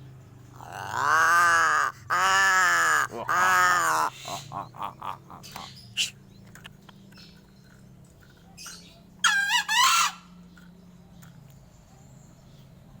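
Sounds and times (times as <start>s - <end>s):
crow calling: 0.5s - 6.2s.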